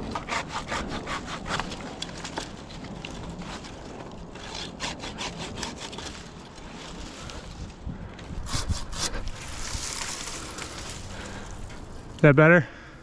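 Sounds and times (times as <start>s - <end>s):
hand saw cutting wood: 0.0s - 2.5s, 3.4s - 7.1s, 8.4s - 9.4s.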